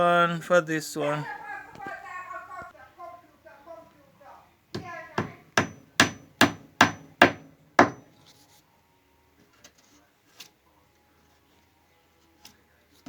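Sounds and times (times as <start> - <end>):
hammer striking wooden plug: 4.8 - 8.1.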